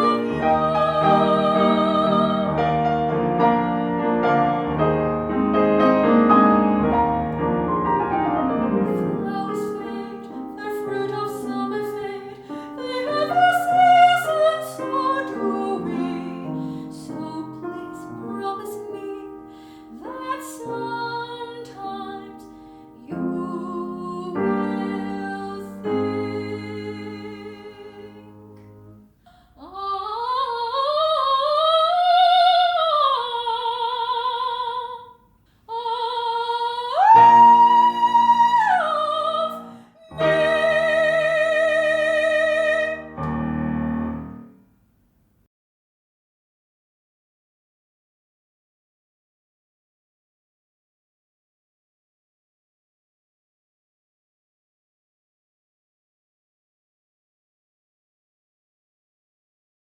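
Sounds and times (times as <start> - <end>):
operatic soprano singing: 0.0 - 5.6, 8.4 - 28.4, 29.6 - 43.1
piano accompaniment: 0.0 - 29.1, 37.0 - 44.6.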